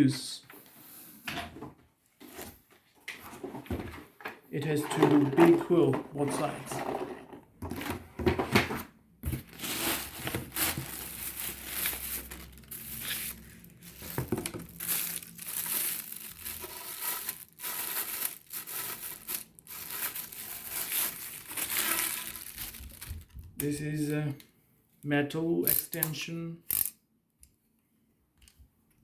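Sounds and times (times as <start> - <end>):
packaging crinkling and rustling: 7.7 - 23.6.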